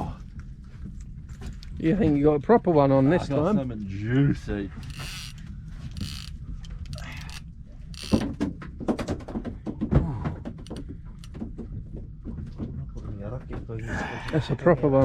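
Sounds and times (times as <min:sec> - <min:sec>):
steady low hum: 0:00.0 - 0:08.9
fishing reel clicking: 0:04.8 - 0:08.3, 0:10.7 - 0:11.3.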